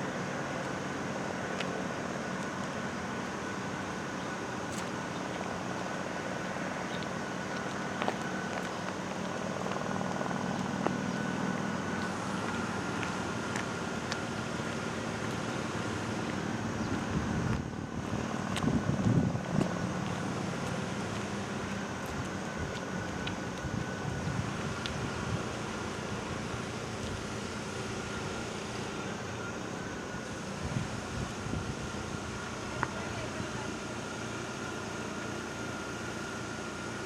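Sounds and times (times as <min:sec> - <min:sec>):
distant traffic: 0:00.0 - 0:37.0
wind rumble: 0:07.0 - 0:33.2
wind gust on microphone: 0:16.8 - 0:19.9, 0:30.6 - 0:32.4.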